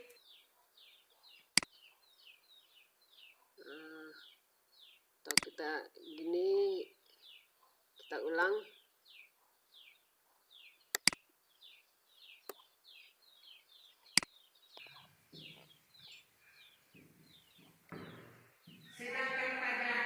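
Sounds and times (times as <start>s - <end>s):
bird chirping: 0.0s - 20.0s
sharp clicks: 5.2s - 5.6s, 10.9s - 11.3s, 12.4s - 12.7s, 14.1s - 15.7s.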